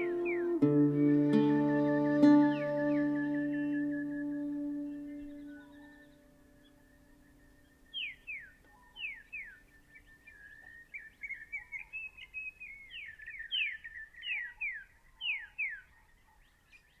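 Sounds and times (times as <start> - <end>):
whistled bird-like calls: 0.0 - 9.2.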